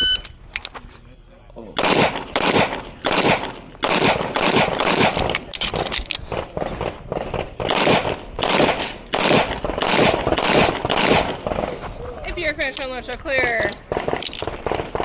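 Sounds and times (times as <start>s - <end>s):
rapid pistol shots: 1.8s - 11.8s, 13.7s - 15.0s.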